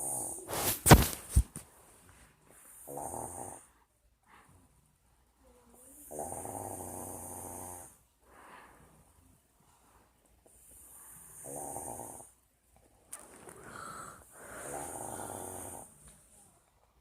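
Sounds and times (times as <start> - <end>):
quiet breathing: 1.7 - 17.0
person snoring: 5.9 - 8.0, 13.5 - 16.0.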